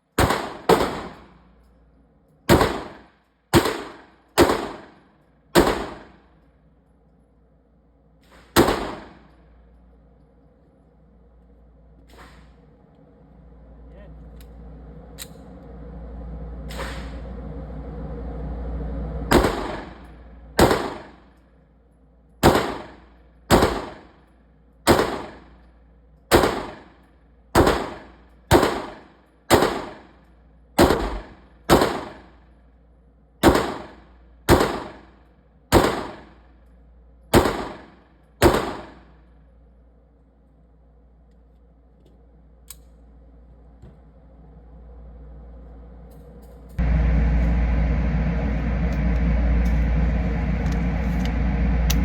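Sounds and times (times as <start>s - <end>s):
pistol shots: 0.2s - 1.4s, 2.5s - 5.0s, 5.6s - 6.2s, 8.3s - 9.3s, 19.3s - 20.0s, 20.6s - 21.2s, 22.4s - 24.2s, 24.9s - 25.6s, 26.3s - 27.0s, 27.6s - 30.2s, 30.8s - 32.4s, 33.4s - 36.4s, 37.3s - 39.2s
low rushing noise: 13.2s - 20.7s, 46.8s - 52.0s.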